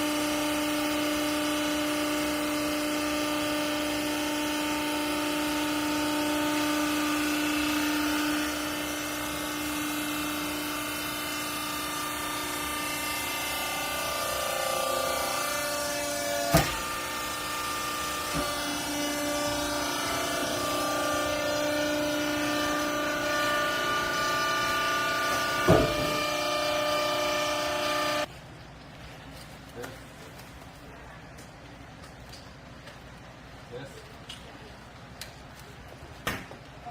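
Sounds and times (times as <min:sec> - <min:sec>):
baler machine whining: 0:00.0 - 0:28.3.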